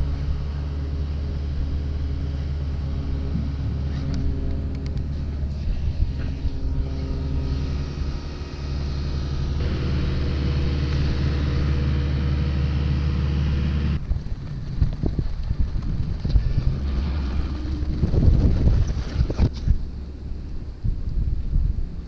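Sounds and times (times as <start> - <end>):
low rumble with hum: 0.0 - 22.0.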